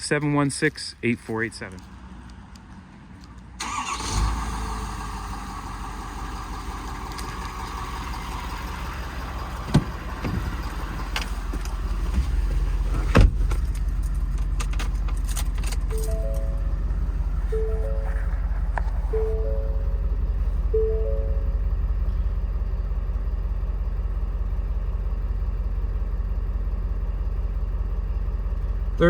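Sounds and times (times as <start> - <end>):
diesel engine starting and idling: 3.5 - 29.0
dashboard warning chime beeps: 15.9 - 22.0.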